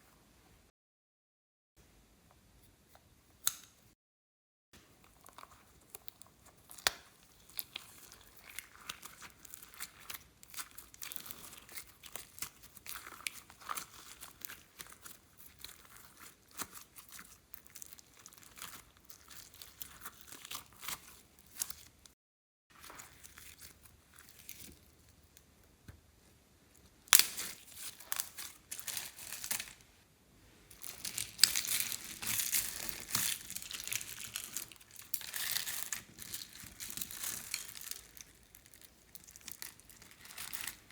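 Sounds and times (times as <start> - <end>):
slime squishing and crackling: 4.9 - 22.1, 22.7 - 25.1, 27.1 - 29.8, 30.7 - 40.9.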